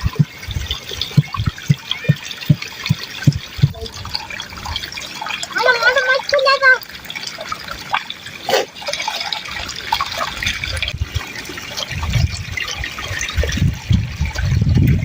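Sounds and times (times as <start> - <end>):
low rumbling thuds: 0.0 - 3.9
water trickling and dripping: 0.0 - 15.0.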